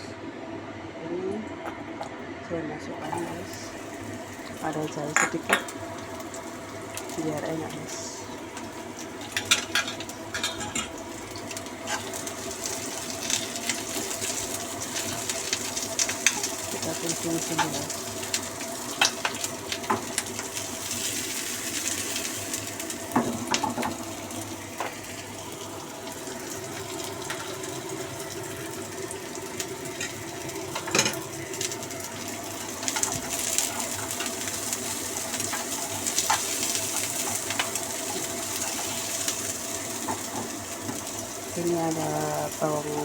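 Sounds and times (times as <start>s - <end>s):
ginger sizzling in oil: 2.9s - 43.0s.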